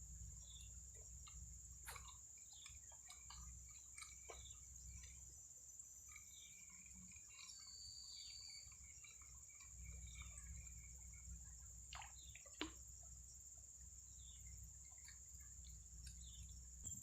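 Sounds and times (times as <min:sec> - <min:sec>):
high-pitched insect drone: 0:00.0 - 0:12.2
small clicks and chirps: 0:00.3 - 0:17.0.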